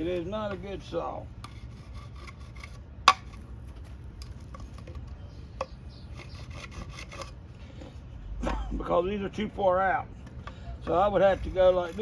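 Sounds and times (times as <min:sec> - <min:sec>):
saw rasping against wood: 0:01.4 - 0:03.2, 0:06.1 - 0:07.4, 0:10.9 - 0:12.0.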